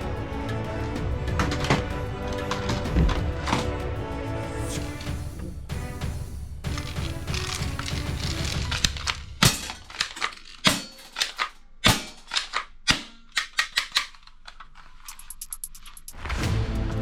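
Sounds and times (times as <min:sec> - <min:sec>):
toy gun clicks and snaps: 0:06.8 - 0:16.0.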